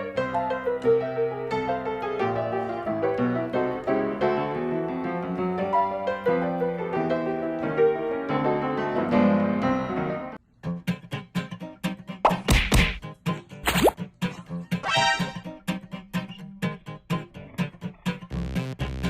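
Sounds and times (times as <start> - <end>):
piano music: 0.0 - 10.4, 14.8 - 15.6.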